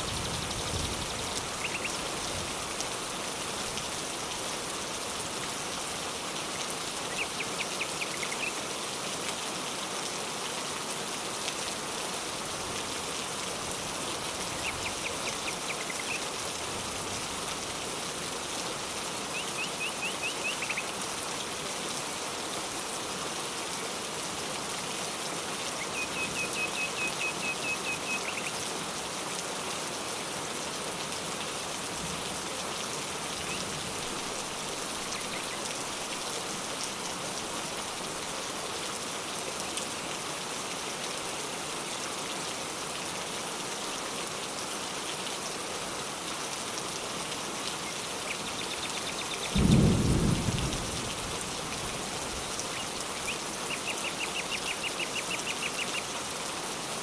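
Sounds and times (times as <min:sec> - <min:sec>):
steady rain: 0:00.0 - 0:57.0
low thunder rumble: 0:49.6 - 0:51.2.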